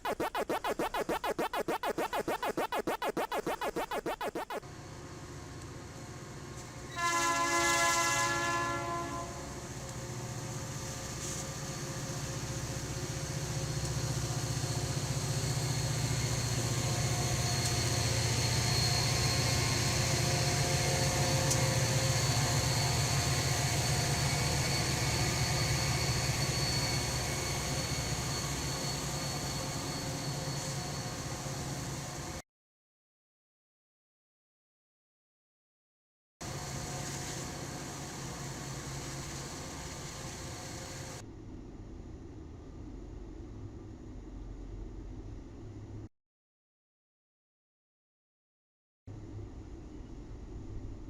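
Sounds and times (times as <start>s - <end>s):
train passing rumble: 4.7s - 32.4s, 36.4s - 45.4s
locomotive horn blast: 6.9s - 9.6s.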